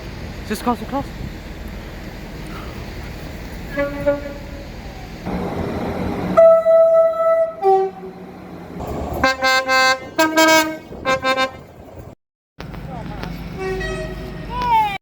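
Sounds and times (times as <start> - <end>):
train rumble: 0.0 - 15.0
train two-tone horn: 3.7 - 5.5, 6.3 - 8.4, 9.2 - 11.7, 13.6 - 14.5.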